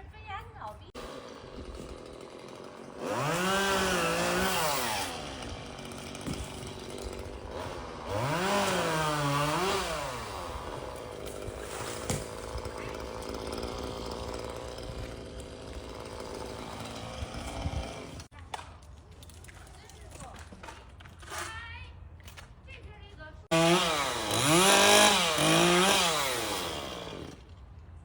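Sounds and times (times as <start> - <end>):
chainsaw engine idling: 1.0 - 11.2, 12.3 - 18.2, 23.5 - 27.3
chainsaw revving: 1.0 - 18.3, 23.5 - 27.5.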